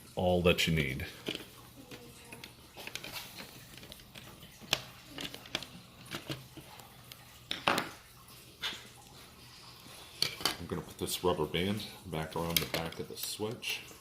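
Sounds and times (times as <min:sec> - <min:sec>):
screwdriver and plastic parts clicking: 0:01.2 - 0:07.2.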